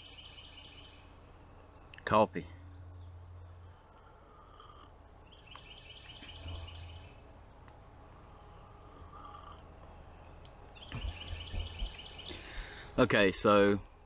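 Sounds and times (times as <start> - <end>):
songbird rapid trill: 0.0 - 1.9, 2.6 - 7.2, 8.2 - 12.8
faint bird calls: 0.0 - 12.9
woodland background noise: 0.0 - 14.0.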